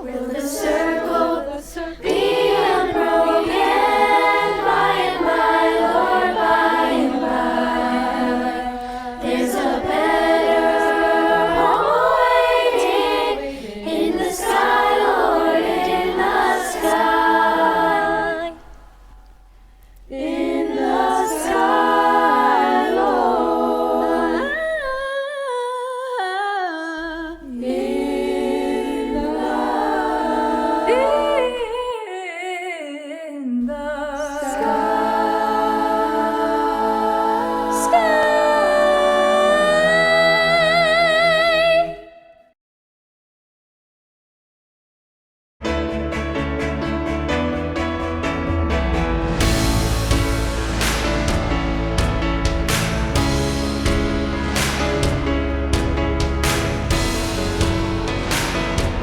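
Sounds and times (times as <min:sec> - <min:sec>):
girls' choir singing: 0:00.0 - 0:19.0, 0:20.1 - 0:25.0, 0:27.2 - 0:32.0, 0:33.7 - 0:41.9, 0:49.4 - 0:59.0.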